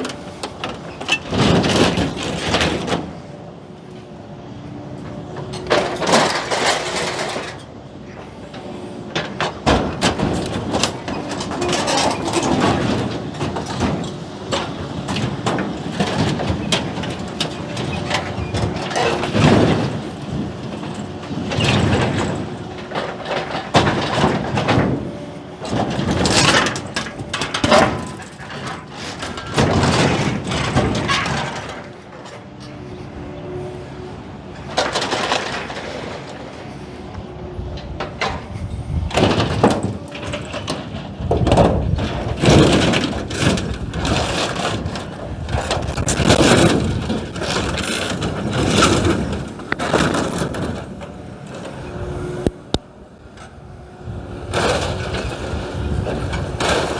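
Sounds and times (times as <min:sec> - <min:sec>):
excavator engine: 0:00.0 - 0:56.9
bending steel crunching and screeching: 0:09.2 - 0:52.9.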